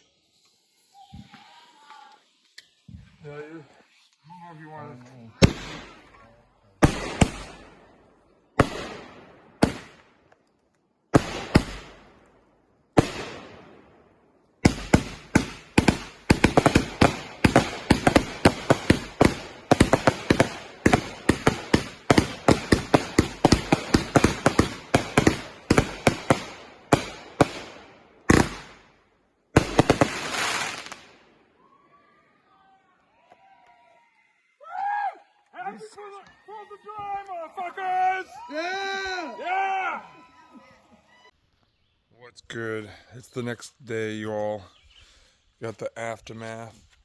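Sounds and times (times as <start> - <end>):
fireworks bangs: 5.3 - 10.3, 11.1 - 31.5.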